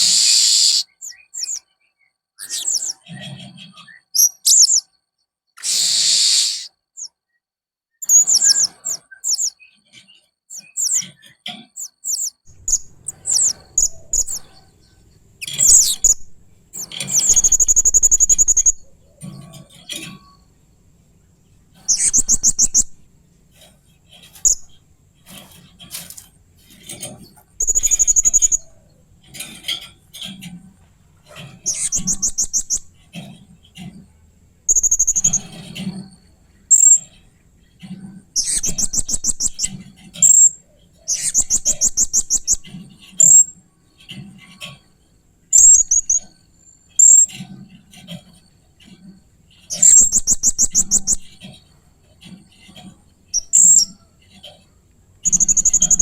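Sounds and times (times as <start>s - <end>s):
parrot rattling trills: 0.0s - 1.6s, 2.4s - 4.8s, 10.5s - 20.4s, 21.8s - 30.5s, 31.3s - 33.9s, 34.7s - 37.2s, 45.5s - 51.5s, 52.3s - 54.6s, 55.2s - 56.0s
parrot sharp chirps: 0.0s - 1.6s, 2.4s - 3.0s, 4.1s - 4.9s, 5.6s - 7.1s, 11.8s - 14.5s.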